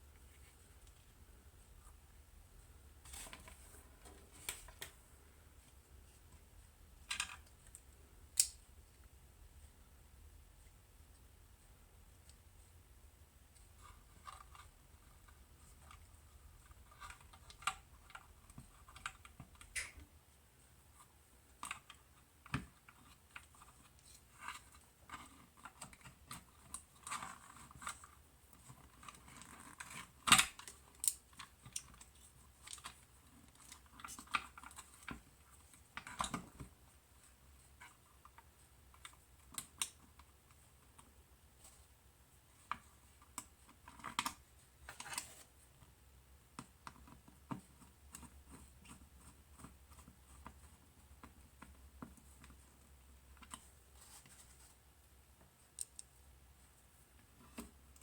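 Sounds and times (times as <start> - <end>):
small parts and tools clicking: 21.6 - 36.7, 55.7 - 56.2.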